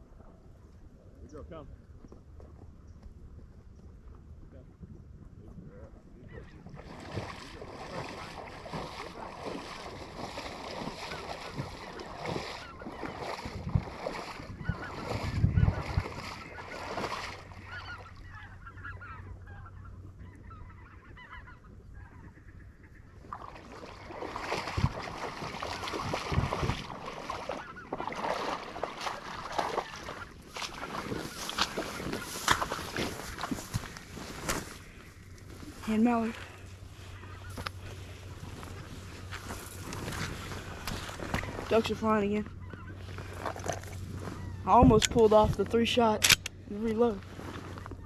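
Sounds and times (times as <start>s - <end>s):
geese honking: 7.9s - 23.3s, 27.0s - 35.2s, 35.9s - 45.4s.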